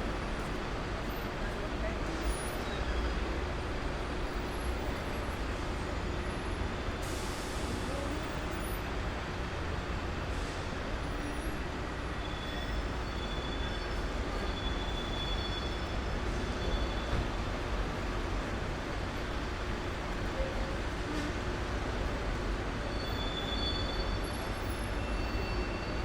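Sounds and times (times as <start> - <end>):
traffic rumble: 0.0 - 26.0
faint high squeals: 11.2 - 17.3, 22.8 - 26.0.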